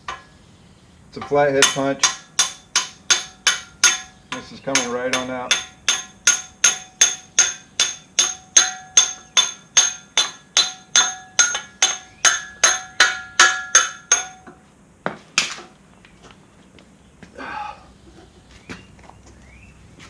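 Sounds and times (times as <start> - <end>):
hammer striking metal punch: 0.0 - 0.4, 1.2 - 14.6.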